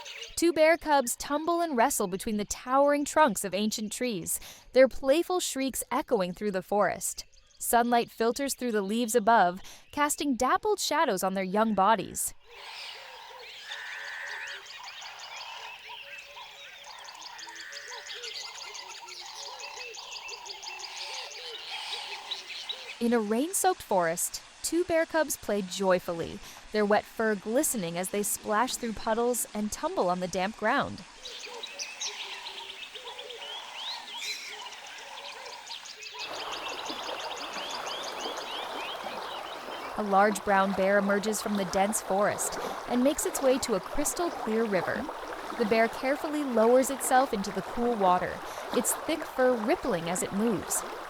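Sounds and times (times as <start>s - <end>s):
birds chirping and trilling: 0.0s - 2.5s, 7.1s - 10.2s, 11.1s - 24.1s, 26.8s - 51.0s
running water hiss: 12.5s - 51.0s.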